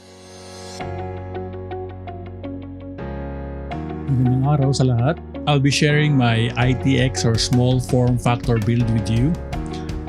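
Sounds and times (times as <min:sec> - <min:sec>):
steady low bass: 0:04.1 - 0:05.2.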